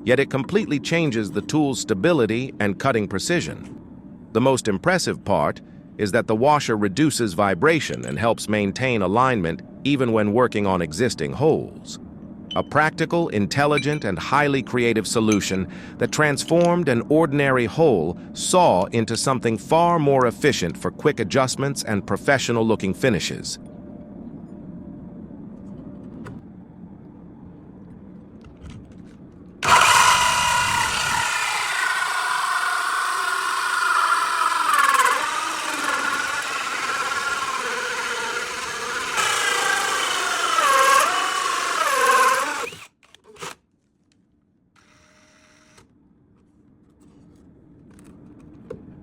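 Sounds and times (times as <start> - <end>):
power drill cutting wood: 29.6 - 43.6, 44.8 - 45.8.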